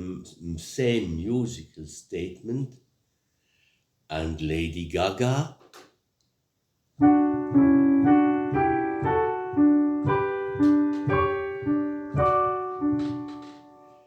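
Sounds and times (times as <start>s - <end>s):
slow piano melody: 7.0s - 14.0s.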